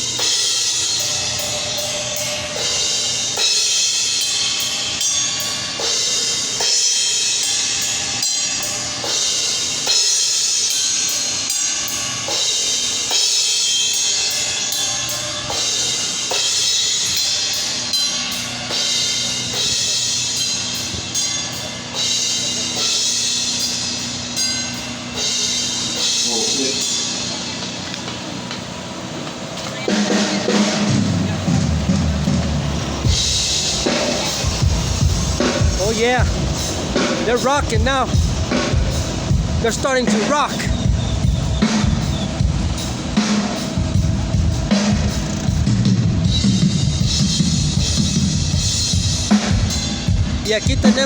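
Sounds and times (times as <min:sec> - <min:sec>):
cymbals: 0:00.0 - 0:51.0
drum kit playing: 0:00.0 - 0:51.0
bass drum: 0:30.9 - 0:51.0.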